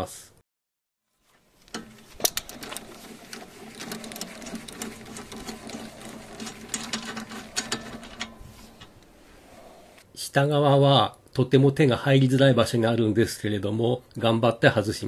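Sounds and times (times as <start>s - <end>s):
power tool whirring and clicking: 1.6s - 9.1s.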